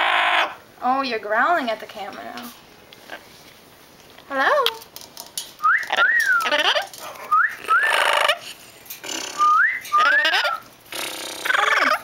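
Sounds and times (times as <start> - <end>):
parrot whistling: 5.6 - 8.4, 9.3 - 10.6.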